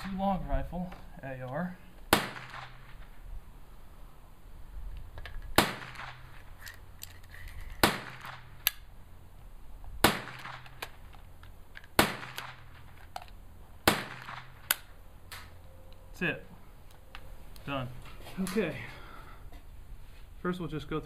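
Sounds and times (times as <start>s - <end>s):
gunshots with echo: 2.1s - 3.0s, 13.9s - 14.6s.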